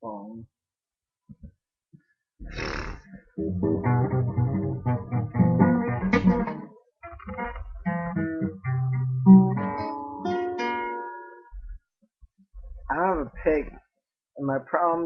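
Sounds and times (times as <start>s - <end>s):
fingerpicked guitar: 3.1s - 11.8s.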